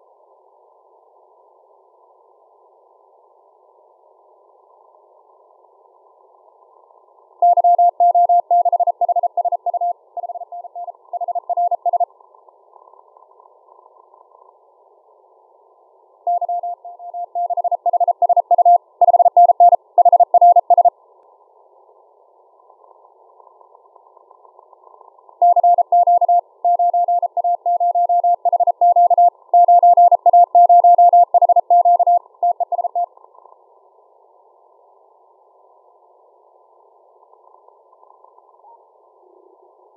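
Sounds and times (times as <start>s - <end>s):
morse code tone: 7.4s - 12.0s, 16.3s - 20.9s, 25.4s - 33.1s.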